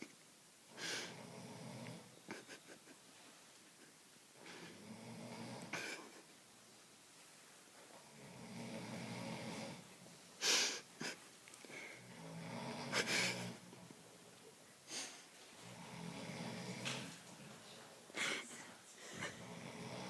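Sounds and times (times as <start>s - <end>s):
person snoring: 4.4s - 6.0s, 8.0s - 9.8s, 11.8s - 13.7s, 15.6s - 16.9s, 19.2s - 20.0s.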